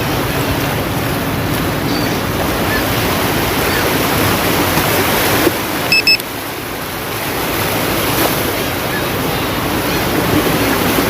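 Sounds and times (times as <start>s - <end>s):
sea surf: 0.0s - 11.0s
short high electronic beeps: 5.9s - 6.2s.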